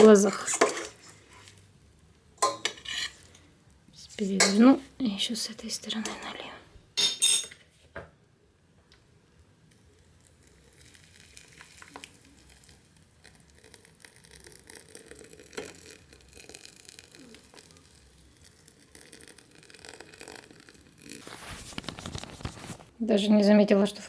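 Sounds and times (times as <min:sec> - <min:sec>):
substrate fizzing and crackling in water: 0:09.7 - 0:22.9.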